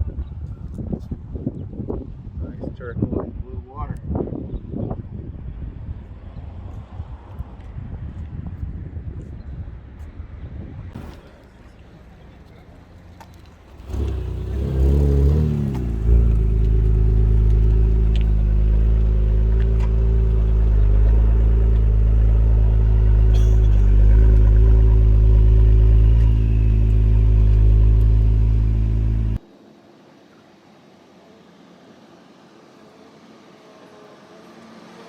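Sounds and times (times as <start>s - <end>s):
car engine revving and droning: 13.6s - 29.4s, 32.0s - 35.0s.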